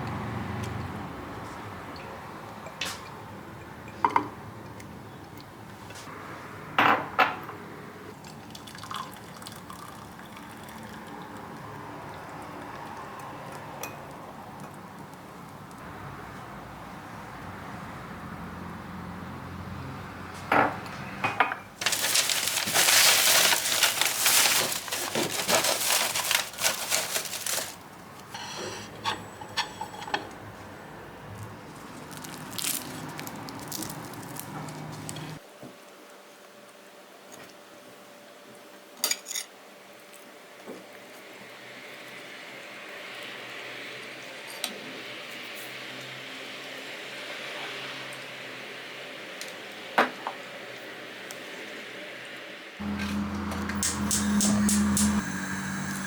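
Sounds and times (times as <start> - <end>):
utensils clinking: 21.8 - 30.4.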